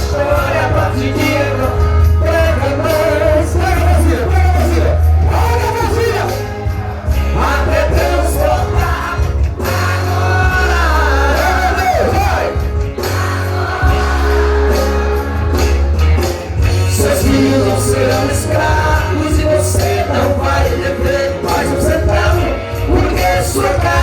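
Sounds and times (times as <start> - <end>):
heavy bass line: 0.0 - 24.0
person singing: 7.2 - 24.0.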